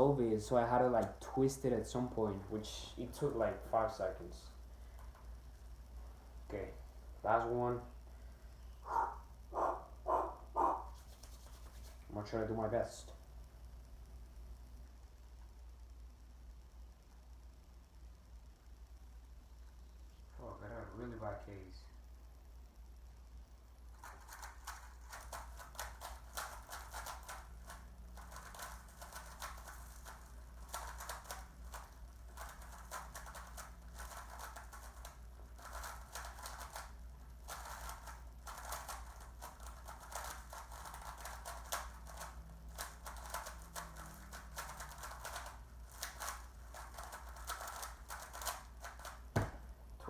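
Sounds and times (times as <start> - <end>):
puzzle cube plastic clicks: 24.0 - 49.3.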